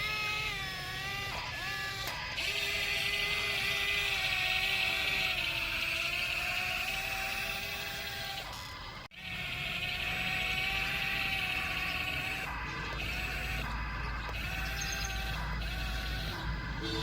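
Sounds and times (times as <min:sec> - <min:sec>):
small electric motor whine: 0:00.0 - 0:17.0.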